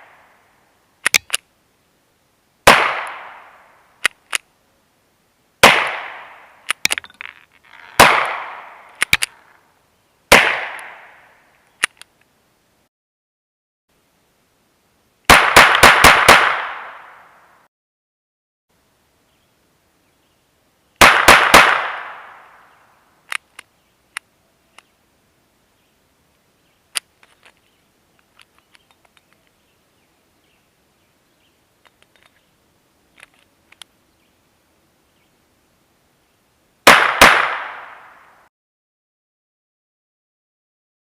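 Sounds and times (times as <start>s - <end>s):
pistol shots with ringing tail: 2.7s - 3.6s, 5.6s - 6.5s, 8.0s - 8.9s, 10.3s - 11.2s, 15.3s - 17.2s, 21.0s - 22.6s, 36.9s - 38.2s
small clicks and knocks: 6.6s - 7.8s, 11.6s - 12.3s, 26.9s - 29.6s, 31.8s - 32.4s, 33.1s - 33.9s.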